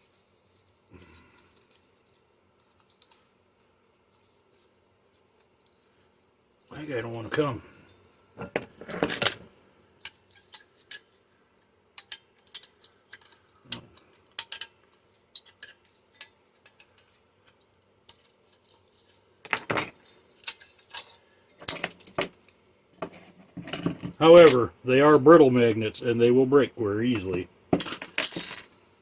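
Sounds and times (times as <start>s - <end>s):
metal tools clinking and tapping: 10.0s - 11.2s, 12.0s - 22.4s, 27.1s - 29.0s.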